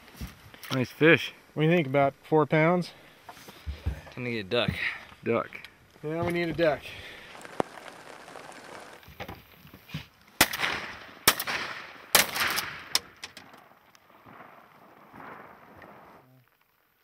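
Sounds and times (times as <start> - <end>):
shotgun shots echoing: 10.4 - 13.2.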